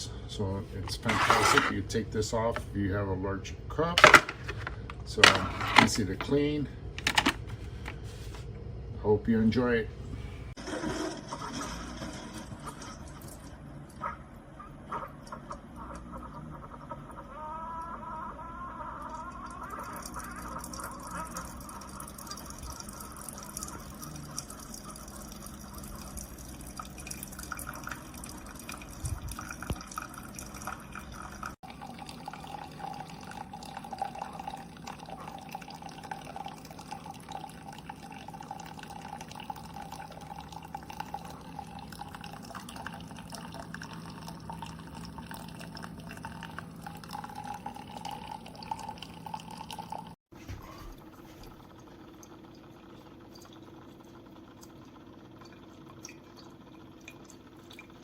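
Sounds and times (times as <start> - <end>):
coffee machine hum: 0.0 - 58.0
coffee streaming into a cup: 0.8 - 2.7, 4.0 - 6.4, 19.1 - 50.2.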